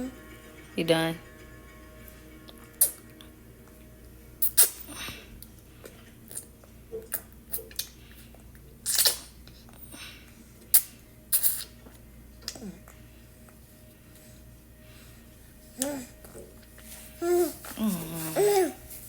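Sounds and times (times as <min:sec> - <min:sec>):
baby's wet mouth smacks: 0:08.9 - 0:09.4.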